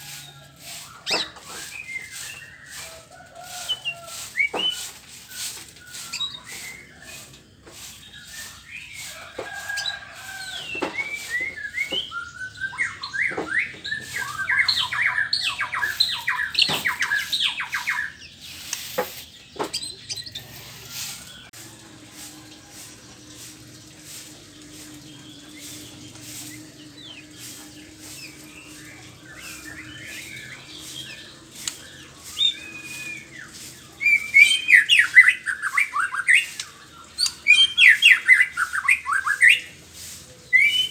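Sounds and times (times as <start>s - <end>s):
bird singing whistled phrases: 32.3s - 33.5s, 40.6s - 40.9s.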